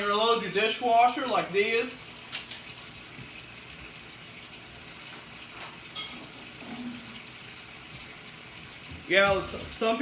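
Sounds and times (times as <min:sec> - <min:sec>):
dishes clinking: 0:05.6 - 0:07.7
tap running into sink: 0:07.4 - 0:10.0.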